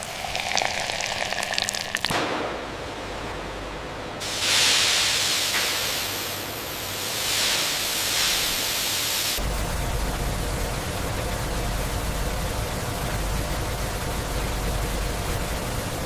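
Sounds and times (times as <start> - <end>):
loud rushing hiss: 4.2 - 11.1.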